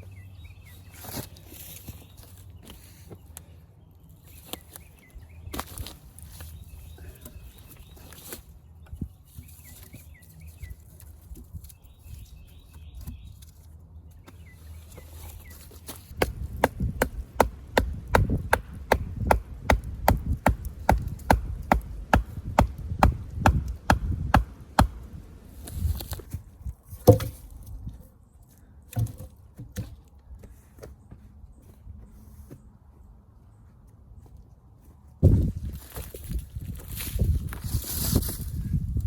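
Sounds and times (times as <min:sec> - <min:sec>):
hand tool chopping wood: 0:15.8 - 0:25.1, 0:27.0 - 0:27.6.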